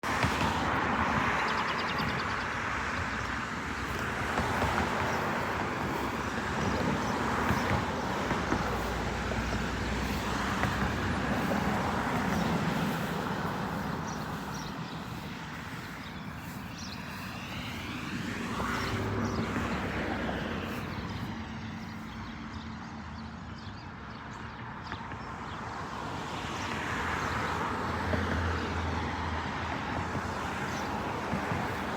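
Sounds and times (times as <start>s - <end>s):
vehicle passing: 0.0s - 22.3s
road traffic rumble: 0.0s - 31.9s.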